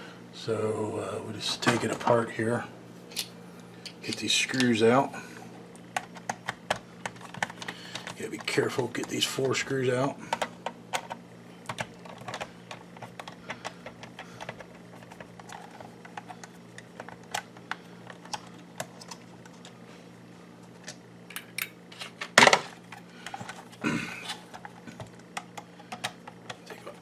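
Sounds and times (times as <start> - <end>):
faint steady hum: 0.0 - 27.0.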